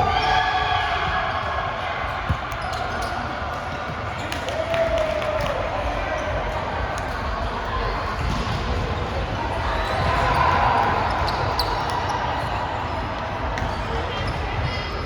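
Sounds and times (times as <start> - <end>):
voices in echoing gym: 0.0 - 15.0.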